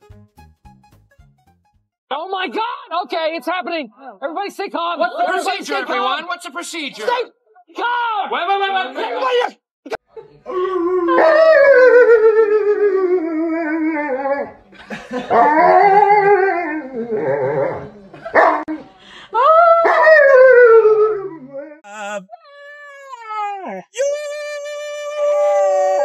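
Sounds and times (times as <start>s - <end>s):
dog howling: 10.6s - 14.6s, 15.3s - 18.7s, 19.4s - 21.8s, 25.2s - 26.0s.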